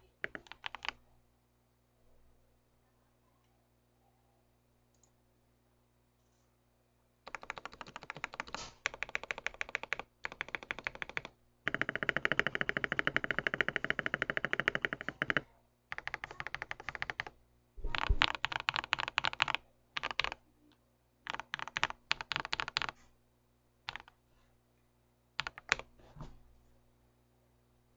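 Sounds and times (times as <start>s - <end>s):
mechanical keyboard typing: 0.2s - 1.0s, 7.3s - 20.4s, 21.3s - 23.0s, 23.9s - 24.1s, 25.4s - 25.9s.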